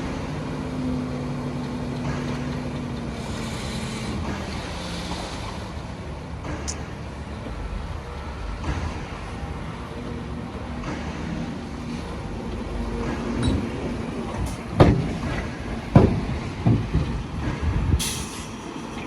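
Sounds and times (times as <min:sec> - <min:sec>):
diesel engine running: 0:00.0 - 0:19.0
loud knocks: 0:14.8 - 0:17.8.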